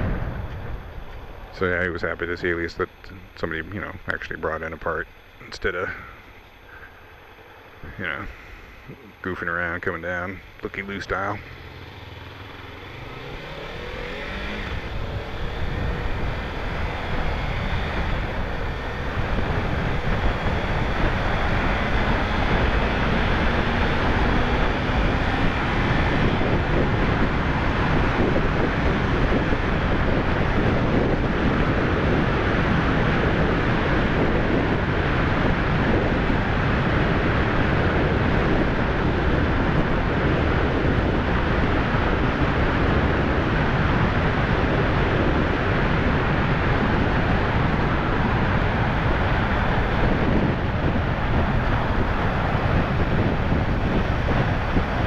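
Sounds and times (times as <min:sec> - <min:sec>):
wind on microphone: 0:00.0 - 0:04.4, 0:13.1 - 0:55.0
motorcycle accelerating: 0:11.1 - 0:55.0.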